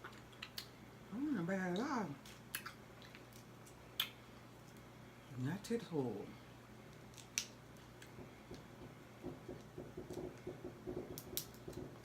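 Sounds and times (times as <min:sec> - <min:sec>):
chewing and smacking: 0:00.0 - 0:00.8, 0:02.2 - 0:04.9, 0:06.9 - 0:08.7.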